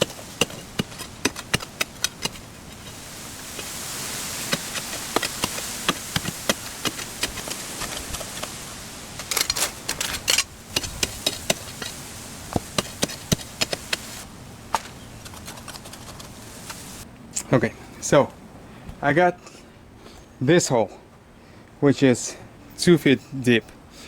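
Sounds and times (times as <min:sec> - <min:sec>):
stones knocking while digging: 0:00.0 - 0:16.8
steady high hiss: 0:00.0 - 0:18.2.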